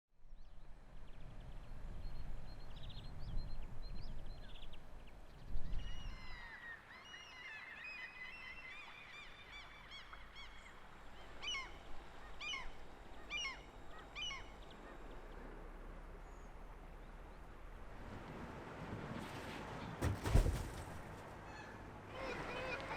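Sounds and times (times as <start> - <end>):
gulls squawking: 21.4 - 22.9.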